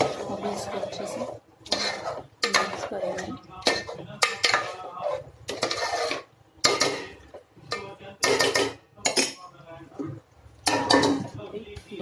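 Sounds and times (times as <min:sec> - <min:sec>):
metal ladle scraping a pot: 0:00.0 - 0:07.1.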